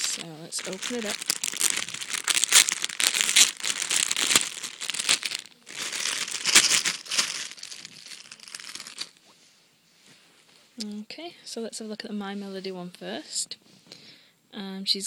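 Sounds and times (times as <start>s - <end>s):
plastic bag crinkling: 0.0s - 9.2s.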